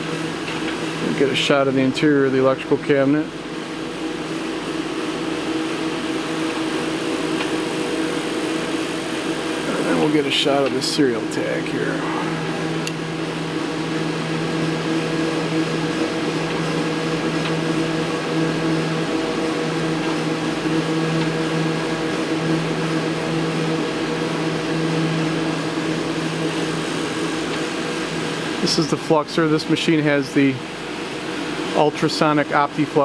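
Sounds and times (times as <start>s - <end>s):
fan noise: 0.0s - 33.0s
machine mechanical hum: 0.0s - 33.0s
low drone: 9.2s - 16.4s.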